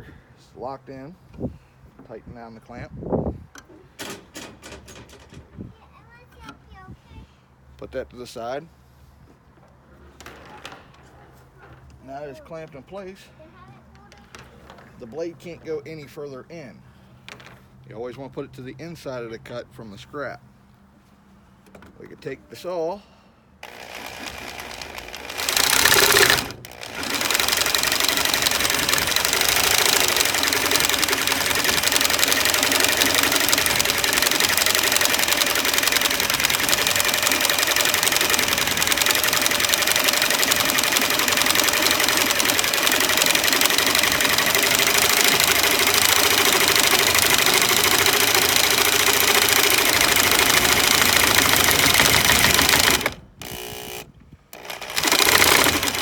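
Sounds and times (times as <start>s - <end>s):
jigsaw cutting wood: 23.6s - 56.0s.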